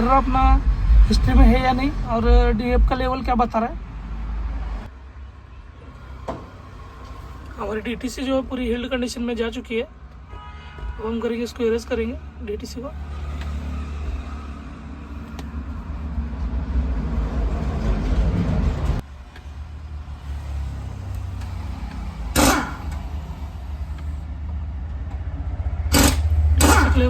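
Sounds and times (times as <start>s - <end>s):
rising noise: 0.0s - 4.9s
vehicle engine rumbling: 0.0s - 27.0s.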